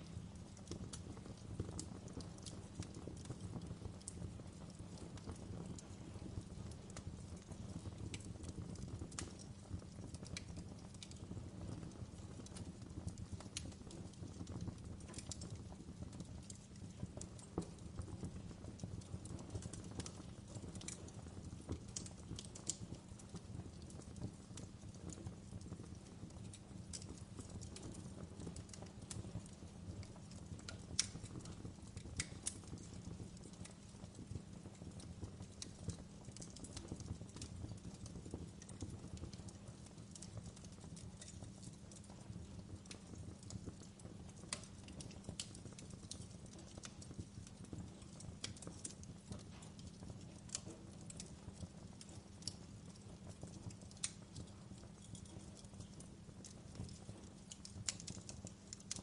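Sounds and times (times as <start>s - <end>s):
fire crackling and popping: 0.0s - 59.0s
low rumble of burning fire: 0.0s - 59.0s.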